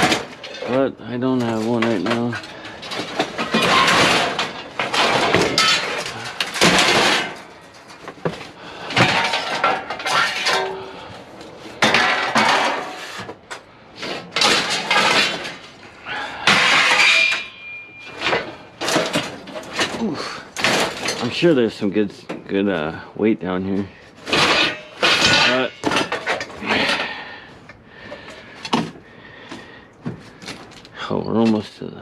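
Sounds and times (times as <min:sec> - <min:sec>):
scrap metal clattering: 0:00.0 - 0:23.0, 0:23.6 - 0:31.7
metal piece ringing: 0:16.6 - 0:18.2.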